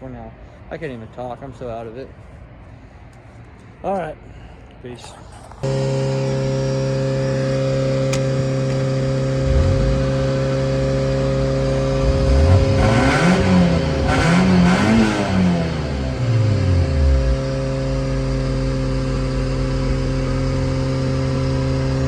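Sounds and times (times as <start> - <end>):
car engine revving: 5.6 - 22.0.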